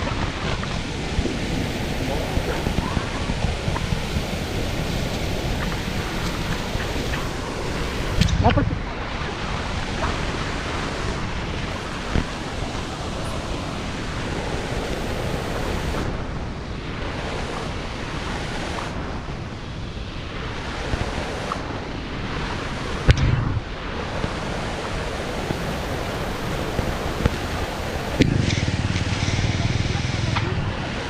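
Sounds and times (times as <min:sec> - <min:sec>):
waterfall rushing: 0:00.0 - 0:16.2, 0:22.4 - 0:31.0.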